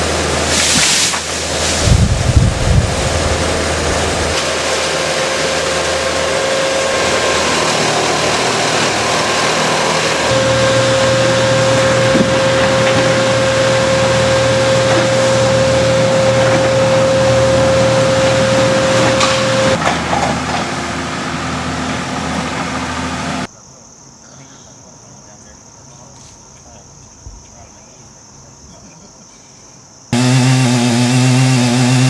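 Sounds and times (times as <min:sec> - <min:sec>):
strong hiss: 0:00.4 - 0:05.6
engine-driven machine running: 0:01.8 - 0:23.5, 0:30.2 - 0:32.0.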